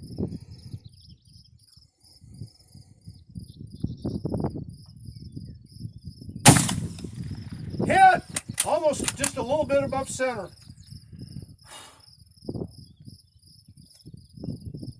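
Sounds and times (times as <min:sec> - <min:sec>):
crickets chirping: 0:00.0 - 0:14.9
rifle shot: 0:06.5 - 0:09.6.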